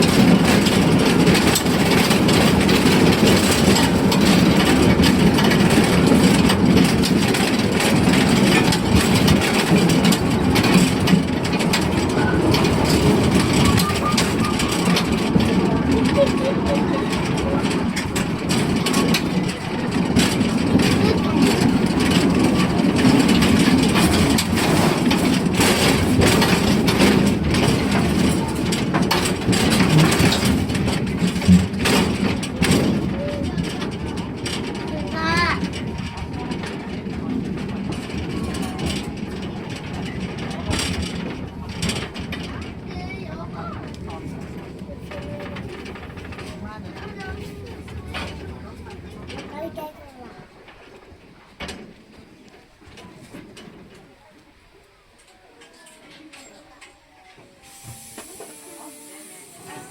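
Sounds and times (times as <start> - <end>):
rail clicks: 0.0 - 59.9
train rumbling on track: 0.0 - 59.9.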